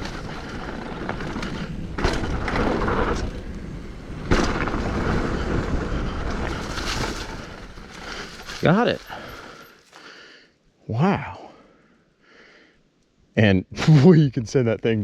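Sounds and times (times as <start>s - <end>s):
bike rattling: 0.0s - 10.0s
bike tyres rumbling on dirt: 0.0s - 10.0s
heavy thump of bike landing: 1.1s - 3.5s, 4.2s - 5.8s.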